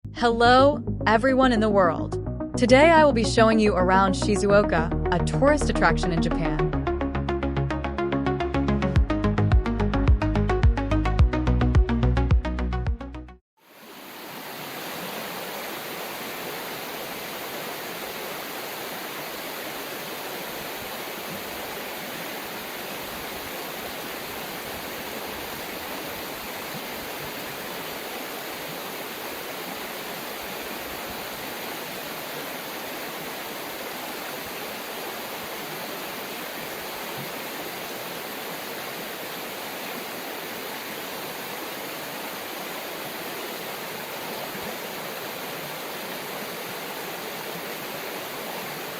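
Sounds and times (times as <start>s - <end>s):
river water rushing: 13.6s - 48.9s.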